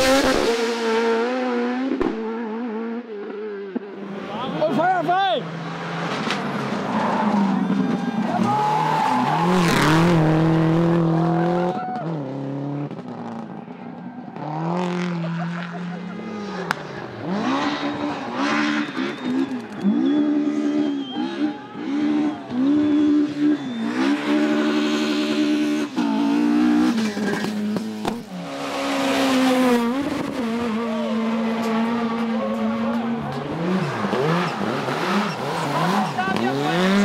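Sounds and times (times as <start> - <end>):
rally car engine revving: 0.0 - 37.0.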